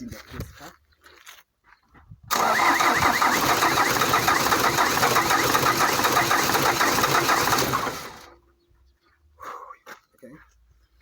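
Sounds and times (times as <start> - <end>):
starter motor cranking engine: 2.3 - 8.4.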